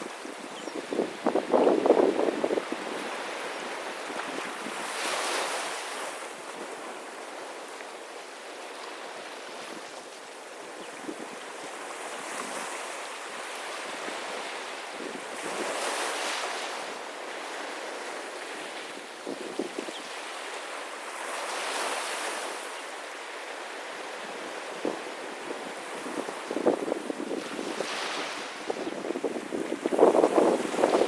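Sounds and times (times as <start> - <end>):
sea waves washing onto beach: 0.0 - 31.0.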